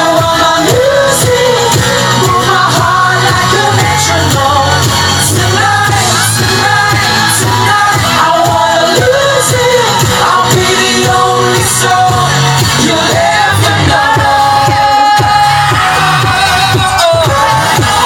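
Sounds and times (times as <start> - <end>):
crowd shouting: 0.0 - 18.0
group singing pop song: 0.0 - 18.0
loud backing track: 0.0 - 18.0.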